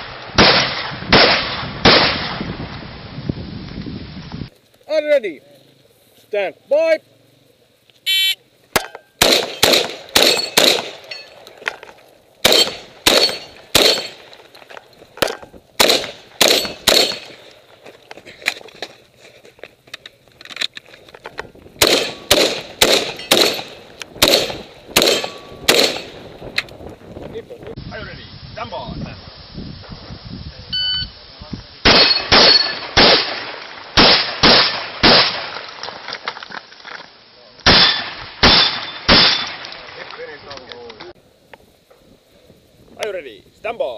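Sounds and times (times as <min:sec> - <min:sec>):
shotgun firing rapid shots: 0:00.4 - 0:02.4, 0:09.2 - 0:11.0, 0:12.4 - 0:14.2, 0:15.8 - 0:17.4, 0:21.8 - 0:26.2, 0:31.8 - 0:35.6, 0:37.7 - 0:39.6
shot timer beep: 0:30.8 - 0:31.1.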